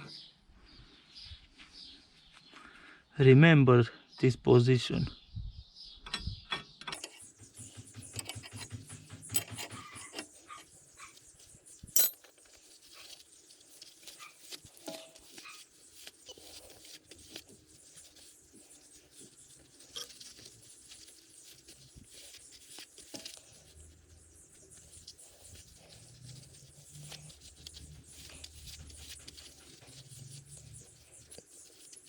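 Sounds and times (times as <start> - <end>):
hand tools clicking and tapping: 6.8 - 10.7, 11.9 - 12.5.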